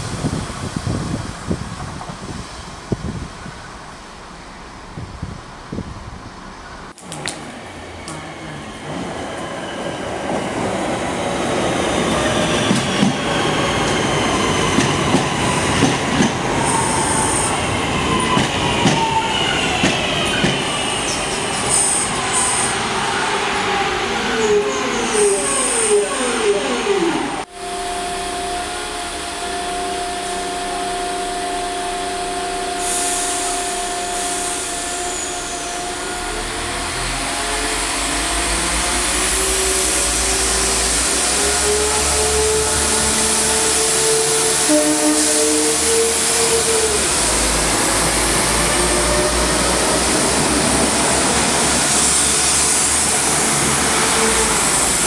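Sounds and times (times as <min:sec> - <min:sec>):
train wheels on rail: 0:00.0 - 0:27.7, 0:28.6 - 0:55.0.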